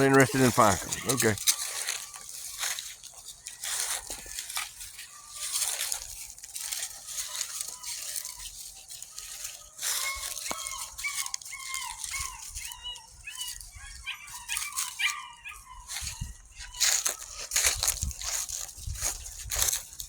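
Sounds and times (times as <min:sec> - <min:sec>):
puppy whining: 0:00.0 - 0:02.8, 0:04.3 - 0:19.8
puppies rustling in dry leaves: 0:00.0 - 0:20.0.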